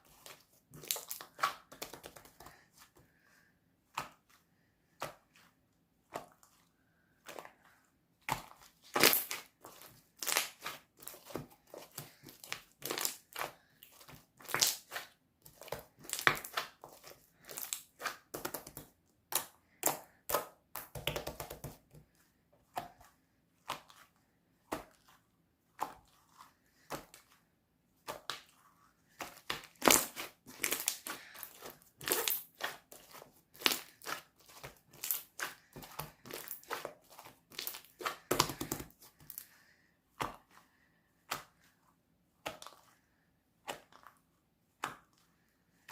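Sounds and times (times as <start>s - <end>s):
slime crackling and popping: 29.7s - 32.7s, 34.9s - 35.4s, 37.5s - 39.4s.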